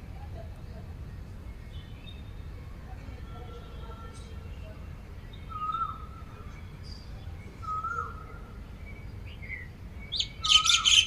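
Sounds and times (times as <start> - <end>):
bird whistled call: 7.6 - 8.2, 9.4 - 11.0
high bird chirps: 9.3 - 11.0.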